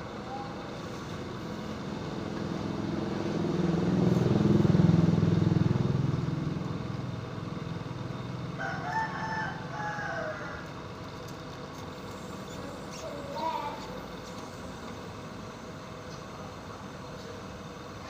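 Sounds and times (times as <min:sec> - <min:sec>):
vehicle engine passing by: 0:01.3 - 0:10.9
rooster crowing: 0:08.6 - 0:10.8.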